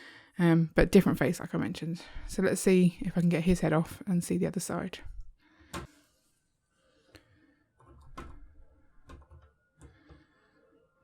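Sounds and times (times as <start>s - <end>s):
faint plastic clicks and knocks: 7.1s - 10.3s.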